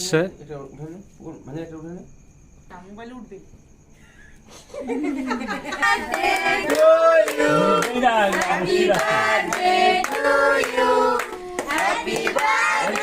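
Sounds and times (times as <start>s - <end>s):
group singing: 5.7s - 13.0s
hands clapping along: 6.0s - 13.0s.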